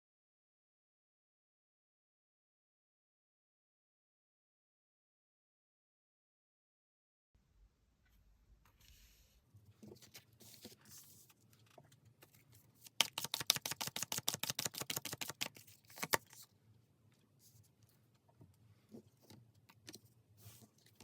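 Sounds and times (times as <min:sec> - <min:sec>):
cards rustling: 0:09.8 - 0:16.5
rapid card clicks: 0:12.8 - 0:16.4.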